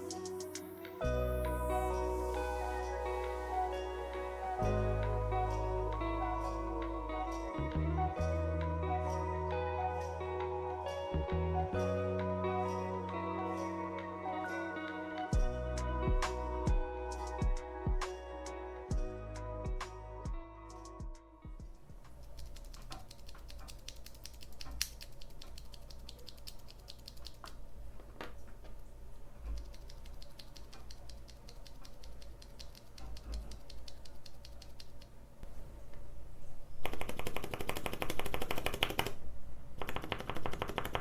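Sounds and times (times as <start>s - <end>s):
fast typing: 22.1s - 27.6s, 29.5s - 34.9s, 36.8s - 39.2s, 39.8s - 41.0s
mechanical keyboard key clicks: 22.2s - 27.6s, 29.5s - 35.1s.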